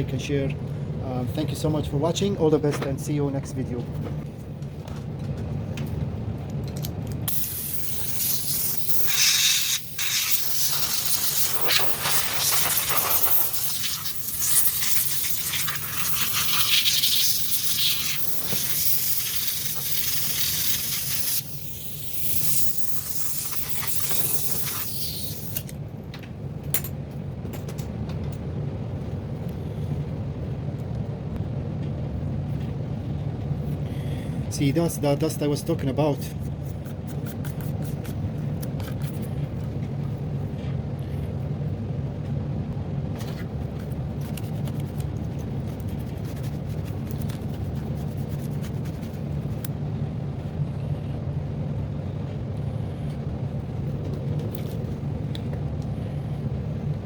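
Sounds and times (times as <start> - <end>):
steady low hum: 0.0 - 57.0
compressed air hissing: 7.3 - 25.7.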